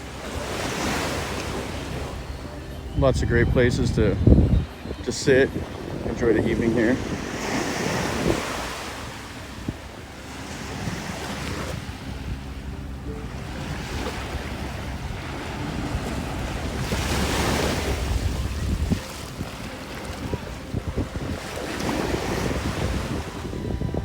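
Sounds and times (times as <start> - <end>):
small waves washing on sand: 0.0 - 24.0
wind buffeting microphone: 0.0 - 24.0.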